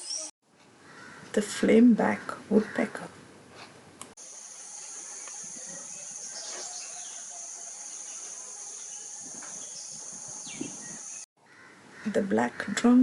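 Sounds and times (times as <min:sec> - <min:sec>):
high-pitched insect drone: 0:04.2 - 0:11.3.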